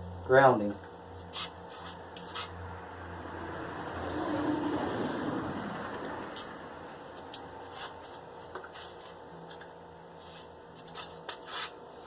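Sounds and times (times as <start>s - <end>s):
metal clicks of hand tools: 6.0s - 6.6s.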